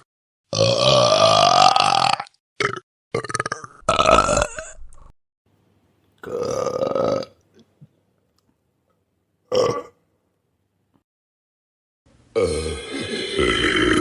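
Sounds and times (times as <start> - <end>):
person burping: 0.5 - 5.0, 6.2 - 7.4, 9.5 - 10.0, 12.3 - 14.0.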